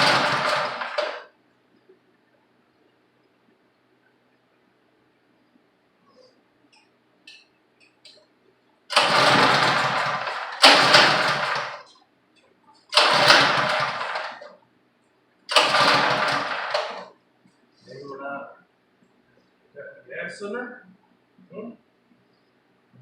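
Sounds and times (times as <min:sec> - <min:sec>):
engine pull-started and dying: 0:00.0 - 0:01.3, 0:08.9 - 0:11.9, 0:12.9 - 0:14.5, 0:15.5 - 0:17.1.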